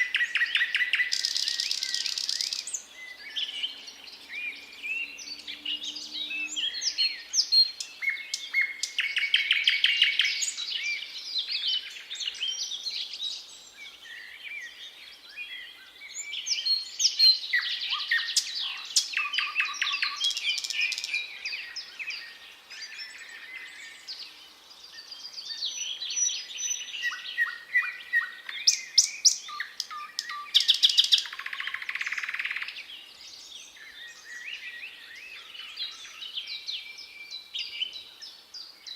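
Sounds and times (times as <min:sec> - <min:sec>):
nightingale singing: 0:00.0 - 0:38.9.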